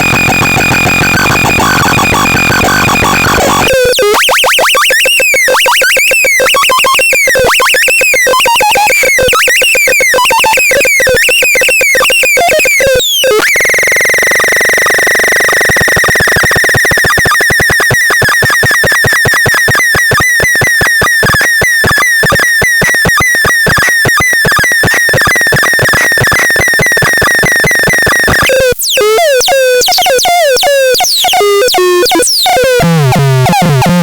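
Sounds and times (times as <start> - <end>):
electronic warbling tone: 0.0 - 4.6
electronic buzzing tone: 0.0 - 5.6, 7.0 - 29.8
rapid electronic chirps: 0.0 - 34.0.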